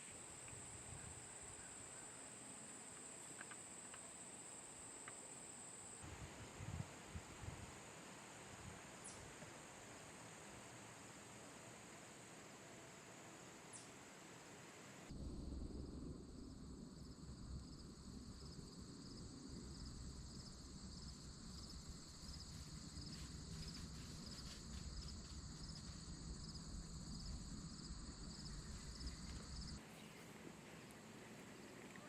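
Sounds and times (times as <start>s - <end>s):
crickets chirping: 0.0s - 29.8s
faint low rumble: 15.1s - 32.0s.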